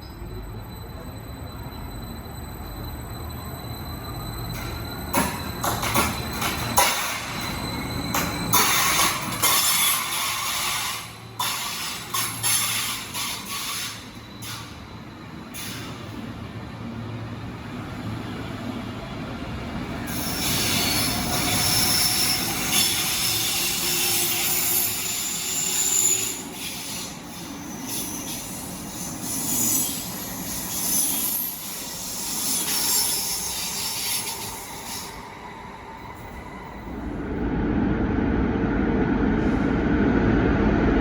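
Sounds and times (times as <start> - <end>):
train wheels squealing on rails: 0.0 - 37.3
low train rumble: 0.0 - 41.0.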